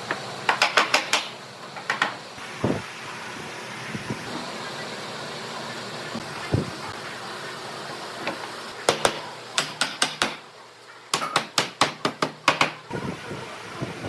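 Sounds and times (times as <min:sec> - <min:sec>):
hammer tapping on wood: 0:11.1 - 0:12.8.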